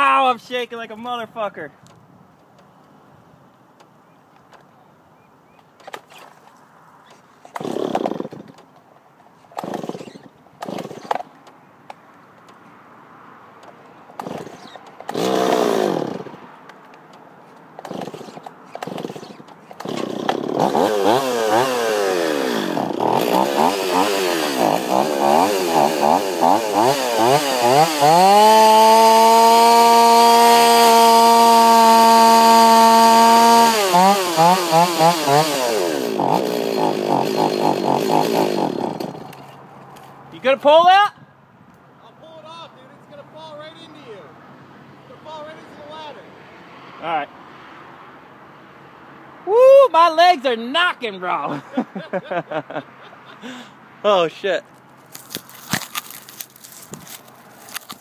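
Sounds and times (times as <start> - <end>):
chainsaw engine revving: 7.5 - 8.5, 9.6 - 11.3, 14.2 - 16.4, 17.8 - 39.6.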